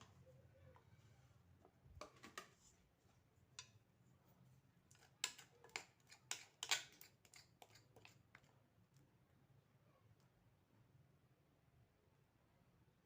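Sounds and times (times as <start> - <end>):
faint kitchen clicks and scrapes: 0.0 - 9.1.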